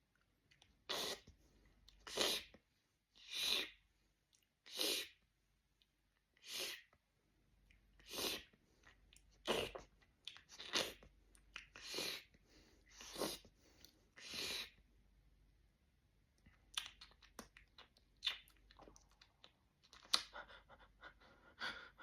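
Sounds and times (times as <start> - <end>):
beatboxing breathy hissing bursts: 3.2 - 3.8, 4.7 - 5.2, 6.4 - 6.8, 8.0 - 8.4, 14.2 - 14.8.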